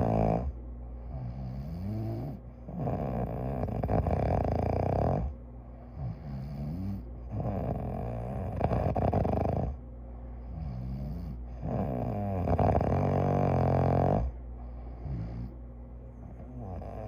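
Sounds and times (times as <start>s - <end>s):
person snoring: 0.0s - 0.5s, 1.1s - 5.3s, 10.5s - 14.3s, 16.4s - 17.0s.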